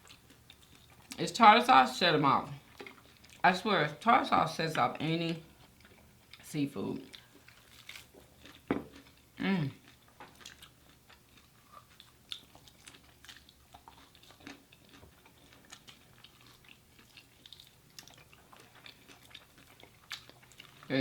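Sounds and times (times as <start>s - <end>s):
person chewing food: 0.0s - 1.2s, 2.6s - 3.4s, 5.4s - 21.0s.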